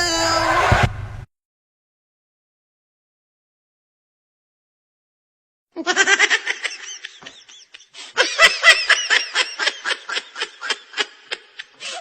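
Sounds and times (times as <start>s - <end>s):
high-pitched laughter: 5.8s - 12.0s.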